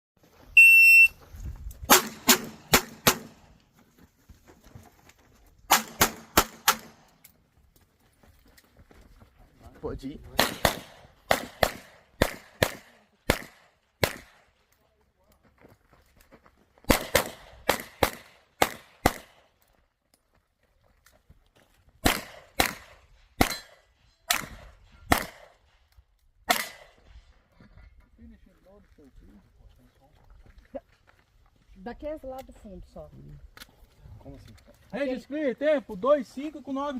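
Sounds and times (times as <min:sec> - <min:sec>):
shot timer beep: 0:00.6 - 0:01.2
handgun shots: 0:01.9 - 0:03.4, 0:05.7 - 0:07.1, 0:10.4 - 0:14.4, 0:16.9 - 0:19.4, 0:22.0 - 0:25.6, 0:26.5 - 0:27.0.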